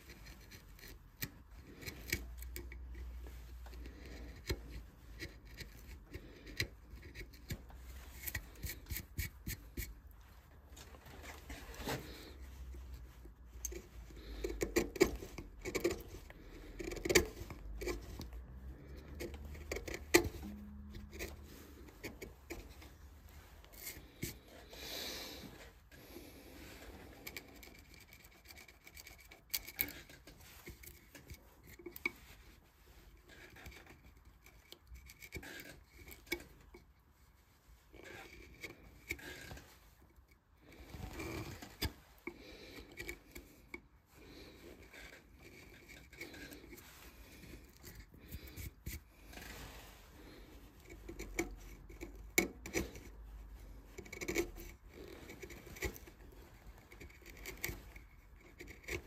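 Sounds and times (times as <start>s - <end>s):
carving tools scraping wood: 0.0s - 59.0s
blade clicking on wood: 57.0s - 59.0s.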